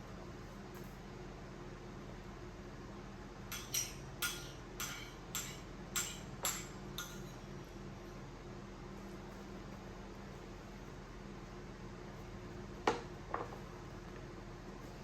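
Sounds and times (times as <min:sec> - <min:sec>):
steady low hum: 0:00.0 - 0:15.0
spoon clinking against bowl: 0:03.5 - 0:07.4.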